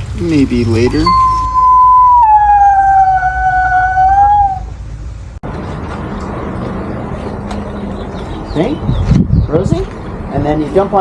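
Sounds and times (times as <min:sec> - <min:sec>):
dog howling: 0:01.5 - 0:04.7.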